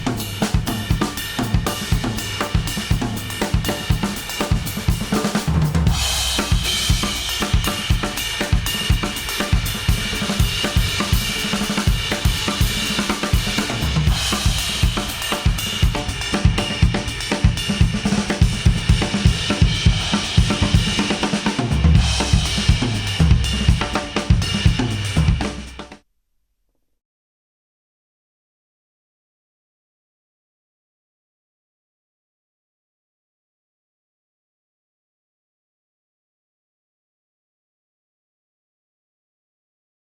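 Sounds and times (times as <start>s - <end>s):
music with drum kit: 0.0s - 26.0s.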